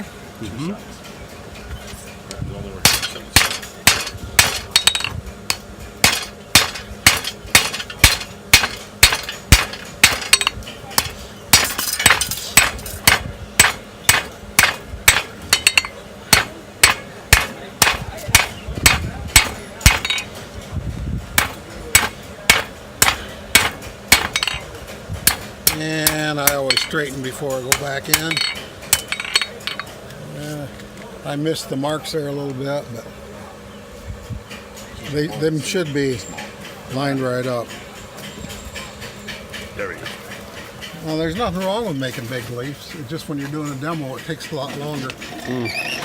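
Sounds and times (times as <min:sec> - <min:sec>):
hammer ringing on anvil: 0:02.8 - 0:20.3, 0:25.3 - 0:29.9.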